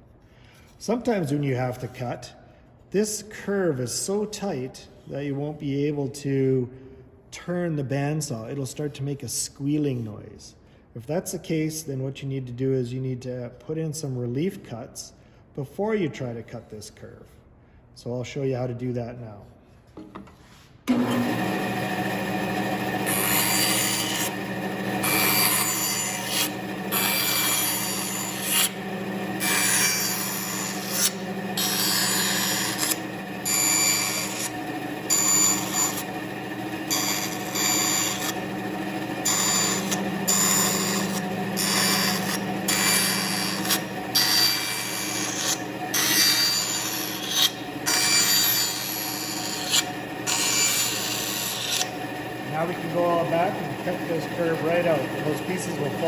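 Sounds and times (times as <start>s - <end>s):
bandsaw blade cutting wood: 20.9s - 56.0s
bandsaw motor hum: 20.9s - 56.0s.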